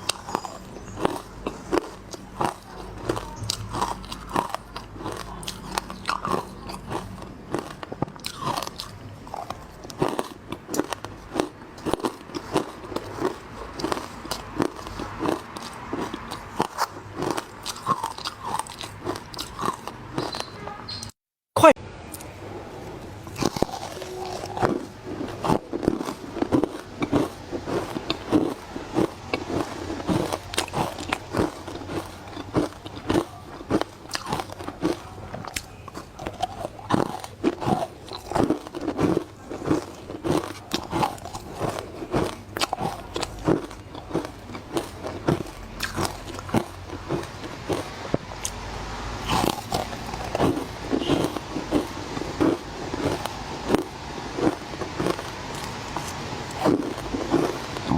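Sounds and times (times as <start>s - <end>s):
ice being bitten and chewed: 0.0s - 20.6s, 23.2s - 57.9s.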